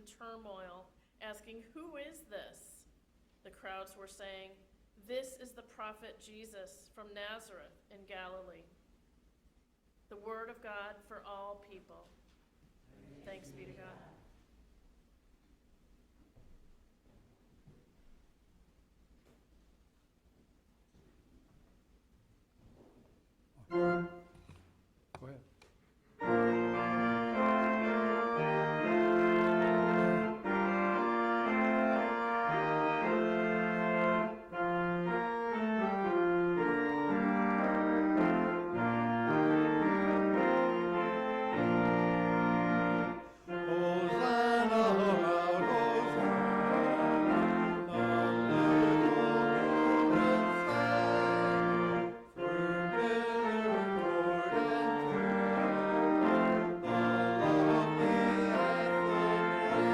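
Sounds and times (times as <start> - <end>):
organ playing sustained chords: 23.6 - 24.4, 26.2 - 59.9.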